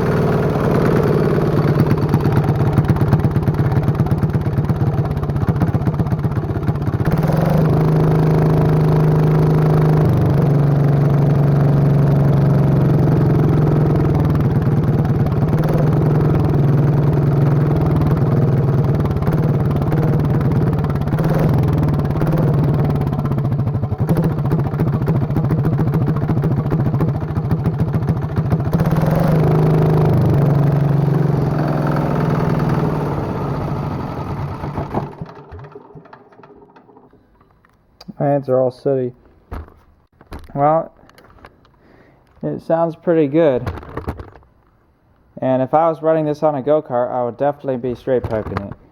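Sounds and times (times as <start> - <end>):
small engine running loud: 0.0 - 37.1.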